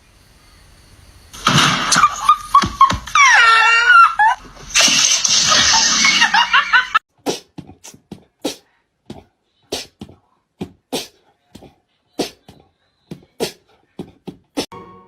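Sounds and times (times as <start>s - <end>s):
loud laughter: 1.7s - 7.0s.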